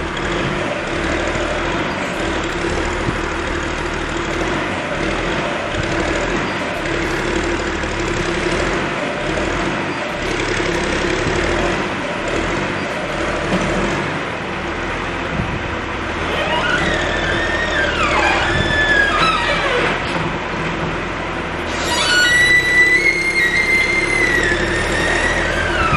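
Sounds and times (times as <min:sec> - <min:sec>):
diesel engine running: 0:00.0 - 0:25.9
high squealing tones: 0:16.2 - 0:20.1, 0:21.6 - 0:25.9.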